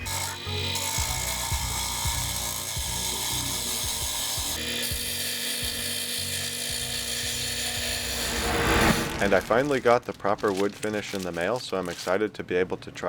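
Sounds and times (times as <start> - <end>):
wood lathe tool scraping wood: 0.0 - 11.9
steady hum: 7.4 - 10.2.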